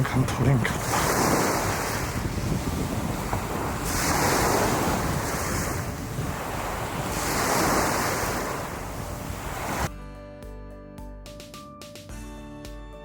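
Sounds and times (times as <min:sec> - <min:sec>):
waves breaking on a beach: 0:00.0 - 0:09.9
wind buffeting the microphone: 0:00.0 - 0:09.9
background music: 0:09.9 - 0:13.0.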